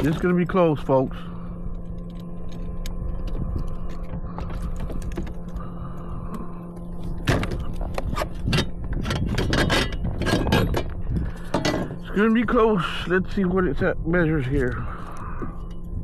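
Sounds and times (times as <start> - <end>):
steady low hum: 0.0 - 16.0
sharp clicks and rattles: 1.6 - 12.6.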